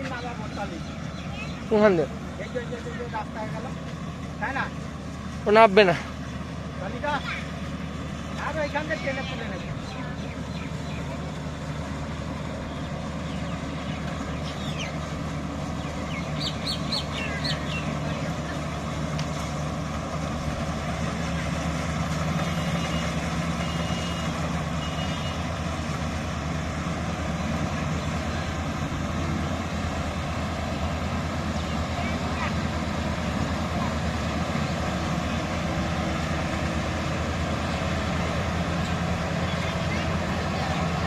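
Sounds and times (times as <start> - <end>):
diesel engine drone: 0.0 - 41.0.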